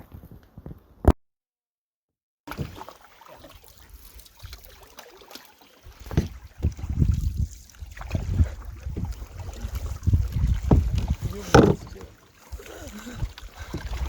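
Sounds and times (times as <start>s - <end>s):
paddle water swishes: 2.5s - 14.0s
low knocks: 10.6s - 12.0s.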